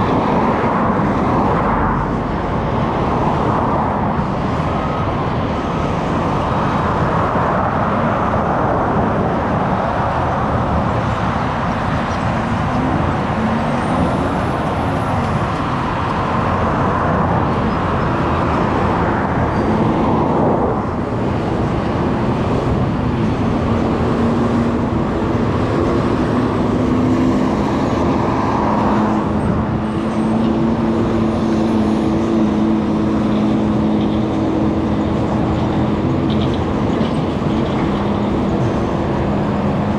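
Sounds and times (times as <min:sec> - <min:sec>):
car tyre and engine rumble: 0:00.0 - 0:39.9
passing vehicle: 0:00.0 - 0:39.9
steady engine hum: 0:00.0 - 0:39.9.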